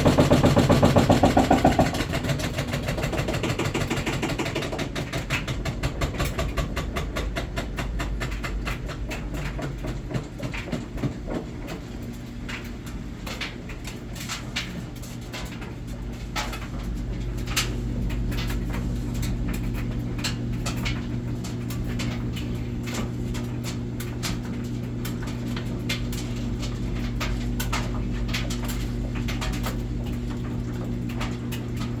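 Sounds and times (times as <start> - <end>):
washing machine drum knocking: 0.0 - 11.9
washing machine low hum: 0.0 - 32.0.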